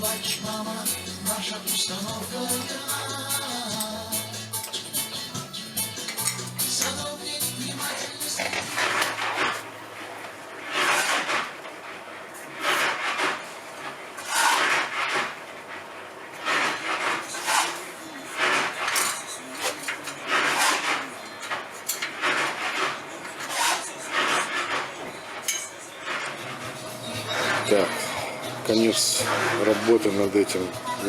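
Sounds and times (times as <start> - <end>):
rough rubbing strokes on a surface: 10.6 - 11.5, 14.2 - 15.4, 16.4 - 18.9, 22.2 - 24.9, 28.7 - 30.3.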